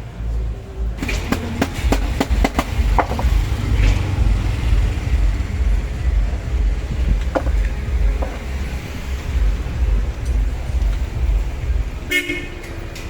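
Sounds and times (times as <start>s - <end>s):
low traffic-like rumble: 0.0s - 13.0s
sharp clicks and knocks: 1.0s - 5.1s, 6.9s - 8.7s.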